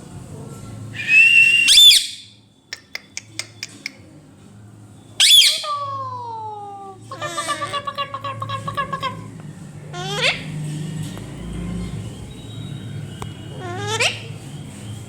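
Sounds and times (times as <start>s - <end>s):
parrot screeching and whistling: 1.0s - 2.4s, 5.2s - 6.3s, 7.0s - 9.3s, 9.9s - 10.6s, 13.5s - 14.5s.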